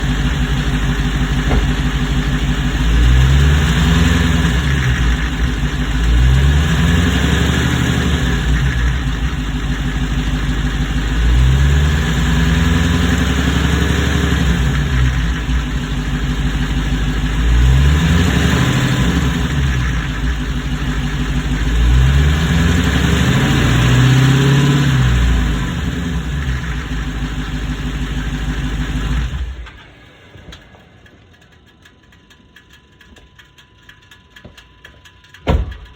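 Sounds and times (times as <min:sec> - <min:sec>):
car engine idling and revving: 0:00.0 - 0:35.9.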